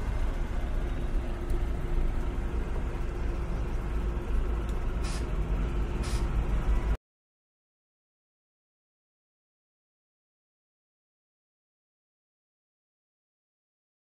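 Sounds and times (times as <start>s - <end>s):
traffic engines rumbling: 0.0s - 7.0s
short hisses: 5.0s - 5.4s, 6.0s - 6.4s.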